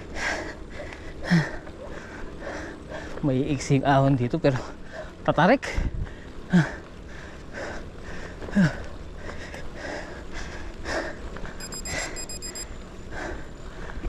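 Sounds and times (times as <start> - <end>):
cyclist breathing hard: 0.0 - 3.4, 4.5 - 14.0
wind rumble on microphone: 5.7 - 6.5
high electronic beeps: 11.6 - 12.7.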